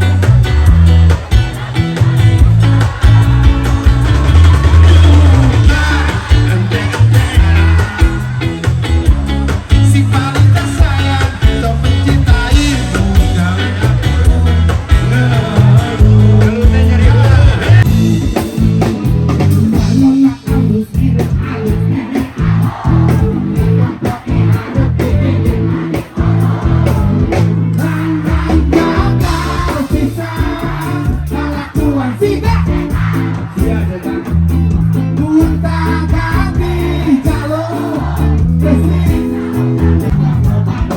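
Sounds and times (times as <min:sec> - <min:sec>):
guitar: 0:00.0 - 0:40.9
steady bass beat: 0:00.0 - 0:40.9
person singing: 0:02.4 - 0:08.8, 0:09.4 - 0:17.9, 0:19.6 - 0:22.3, 0:23.1 - 0:34.4.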